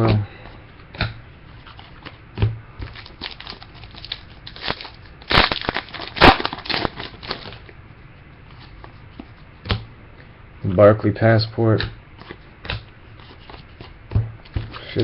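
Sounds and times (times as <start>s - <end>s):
foil wrapper crinkling: 2.8s - 7.7s
wrapper crunches: 2.9s - 7.6s.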